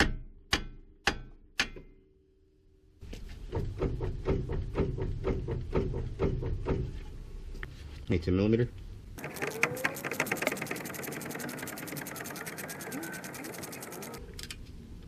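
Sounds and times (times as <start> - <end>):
mechanical clicks: 9.2 - 14.6.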